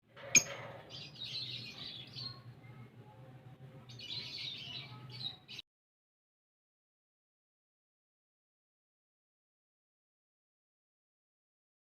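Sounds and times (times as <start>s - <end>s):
lovebirds chattering: 0.3s - 2.8s, 3.8s - 5.6s.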